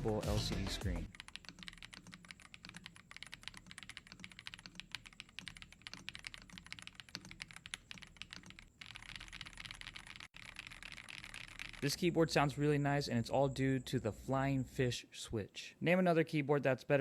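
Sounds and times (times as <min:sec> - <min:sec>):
mechanical keyboard typing: 0:01.1 - 0:12.6.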